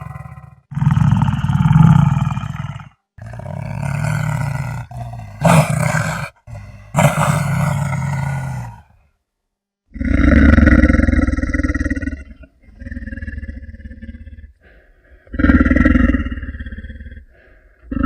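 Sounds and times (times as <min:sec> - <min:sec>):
wolf growling: 0:00.0 - 0:09.0.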